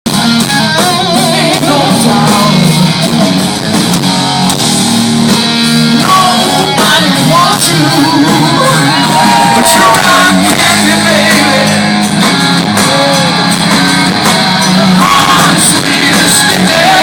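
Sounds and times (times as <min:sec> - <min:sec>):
live rock band playing: 0:00.0 - 0:17.0
electric guitar: 0:00.1 - 0:17.0
person singing: 0:00.8 - 0:03.1, 0:05.9 - 0:13.6, 0:14.6 - 0:17.0.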